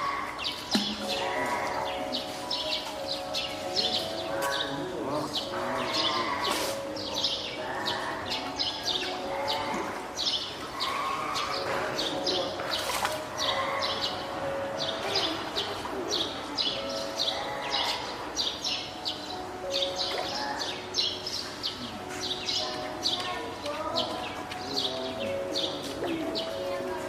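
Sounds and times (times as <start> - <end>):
seal pup crying: 1.0 - 2.1, 5.6 - 10.0, 10.7 - 12.1, 13.3 - 14.4, 17.2 - 18.2.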